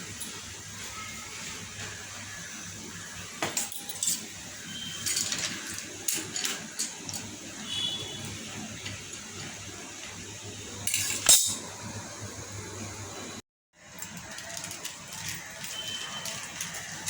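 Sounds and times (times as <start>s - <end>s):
metal utensils clinking on cookware: 3.4s - 9.6s, 10.8s - 11.8s, 13.9s - 17.0s.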